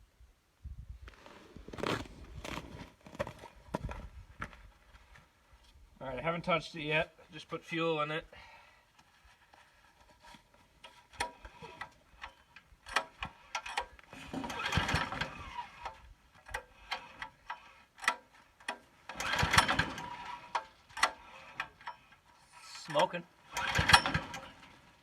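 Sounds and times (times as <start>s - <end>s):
diesel engine turning over: 11.2s - 22.0s, 23.4s - 25.0s.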